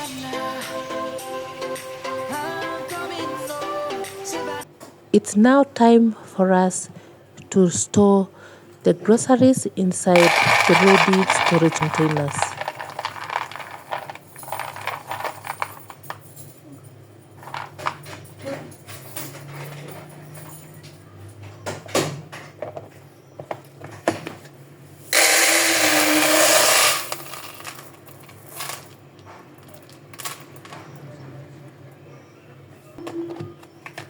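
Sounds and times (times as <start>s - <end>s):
plastic containers clattering: 10.2s - 16.2s.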